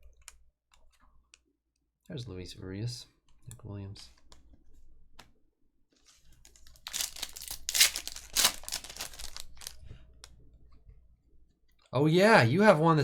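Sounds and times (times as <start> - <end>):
plastic wrapper tearing and crinkling: 6.1 - 10.0.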